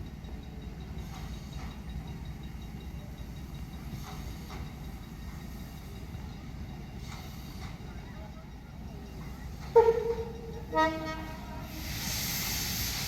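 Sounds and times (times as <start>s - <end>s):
steam locomotive rumble and hiss: 0.0s - 13.0s
faint short steam puffs: 7.0s - 7.8s, 11.0s - 13.0s.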